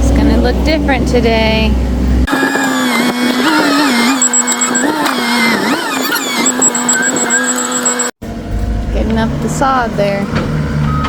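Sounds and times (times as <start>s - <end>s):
skid steer engine under load: 0.0s - 11.0s
fast high-pitched beeping: 2.3s - 8.2s.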